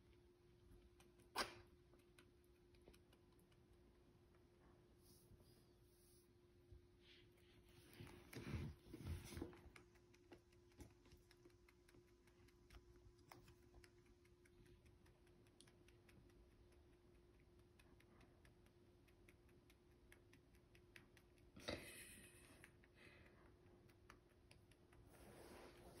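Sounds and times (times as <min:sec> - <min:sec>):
rabbit chewing food: 0:00.0 - 0:21.6, 0:22.4 - 0:26.0.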